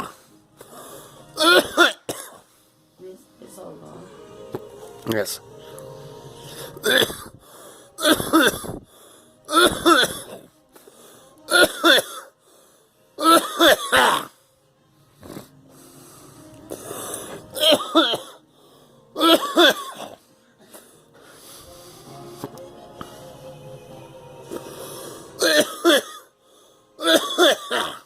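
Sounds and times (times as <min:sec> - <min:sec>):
person coughing: 0:01.4 - 0:02.4, 0:06.8 - 0:07.4, 0:08.0 - 0:08.8, 0:09.5 - 0:10.5, 0:11.5 - 0:12.3, 0:13.2 - 0:14.3, 0:17.6 - 0:18.4, 0:19.2 - 0:20.8, 0:25.4 - 0:26.3, 0:27.0 - 0:28.0.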